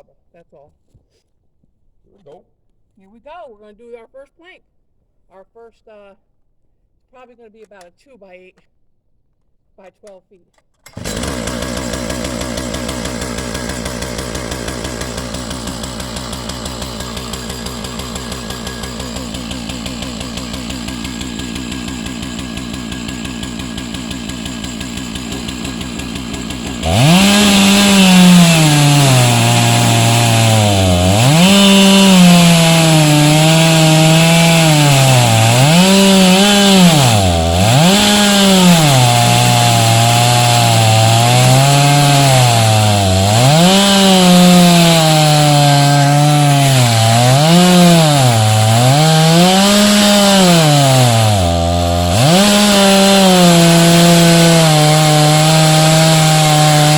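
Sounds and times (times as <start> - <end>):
chainsaw cutting through log: 10.8 - 56.9.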